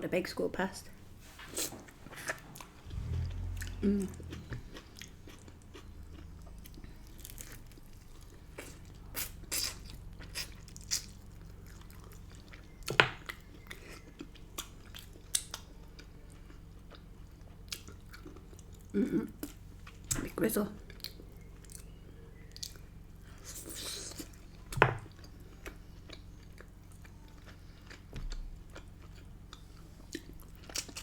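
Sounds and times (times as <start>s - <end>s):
chewing and biting: 2.0s - 20.3s, 20.9s - 31.0s
low rumble: 2.8s - 8.3s.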